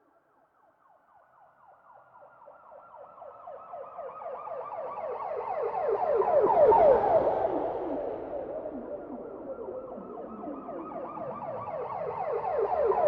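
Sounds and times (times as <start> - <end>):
police siren yelping: 9.8 - 13.0.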